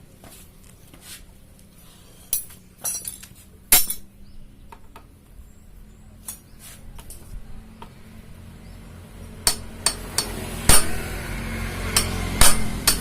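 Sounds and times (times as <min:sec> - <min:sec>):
metal tools clinking: 0:02.2 - 0:04.1
sharp metal strikes: 0:09.4 - 0:13.0.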